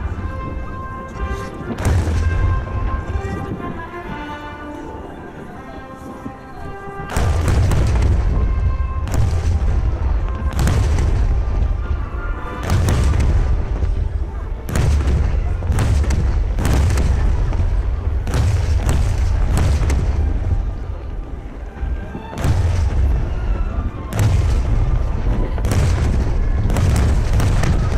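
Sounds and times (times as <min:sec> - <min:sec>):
fireworks booming: 0:00.0 - 0:04.2, 0:07.0 - 0:27.9
music playing: 0:00.0 - 0:15.6.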